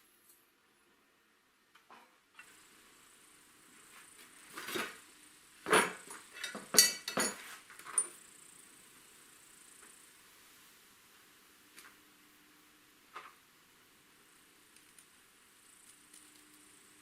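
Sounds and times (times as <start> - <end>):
hard objects knocking and clinking: 5.7 - 7.4.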